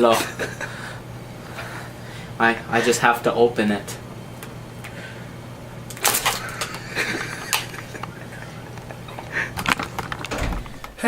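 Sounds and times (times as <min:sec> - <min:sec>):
doorknob turning: 0:09.5 - 0:11.0
door latch clicks: 0:09.6 - 0:11.0.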